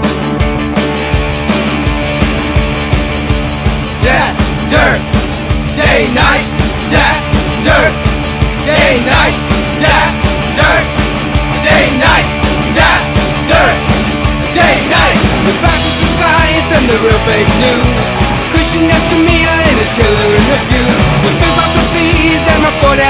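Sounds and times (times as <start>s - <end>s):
driving drum beat: 0.0s - 23.0s
rock song: 0.0s - 23.0s.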